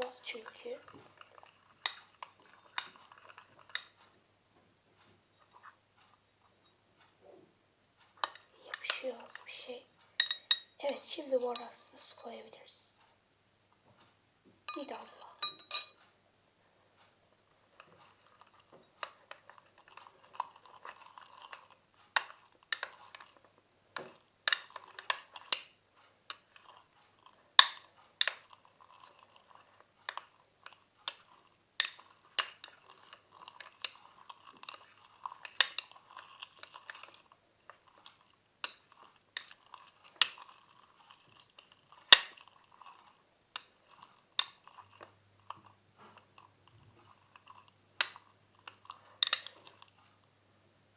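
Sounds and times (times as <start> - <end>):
slime squelching: 0.0 - 4.2, 8.2 - 9.9, 14.8 - 15.4, 17.6 - 50.3
spoon clicking against bowl: 47.4 - 49.9.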